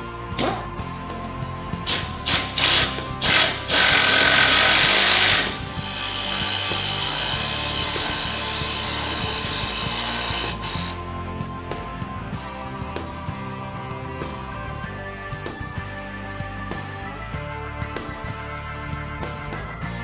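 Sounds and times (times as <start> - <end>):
background music: 0.0 - 20.0
power tool running: 0.2 - 11.6.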